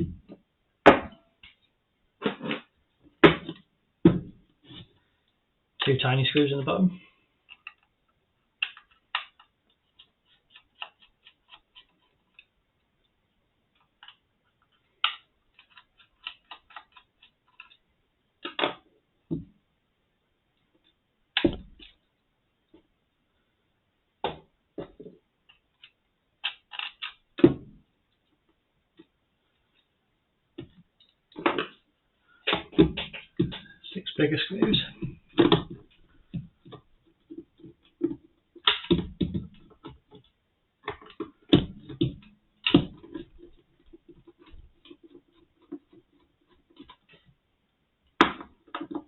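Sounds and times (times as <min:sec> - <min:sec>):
screwdriver turning tiny screws: 0:08.6 - 0:12.5, 0:15.0 - 0:17.8.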